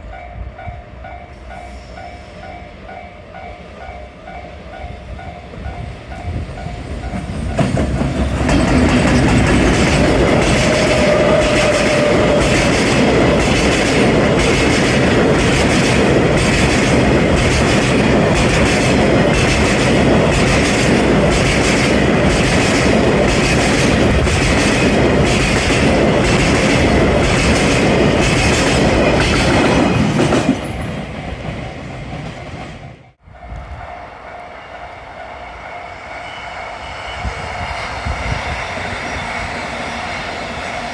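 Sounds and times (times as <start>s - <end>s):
train wheels clattering over rails: 6.2s - 32.9s.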